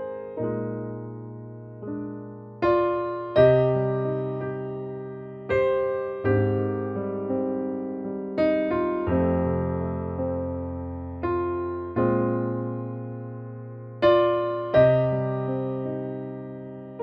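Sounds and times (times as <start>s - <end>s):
slow electric piano chords: 0.0s - 17.0s.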